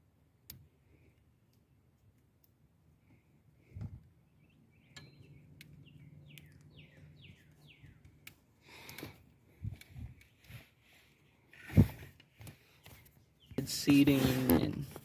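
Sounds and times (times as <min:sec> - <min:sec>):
bird chirping: 0:04.2 - 0:08.9, 0:12.6 - 0:14.8.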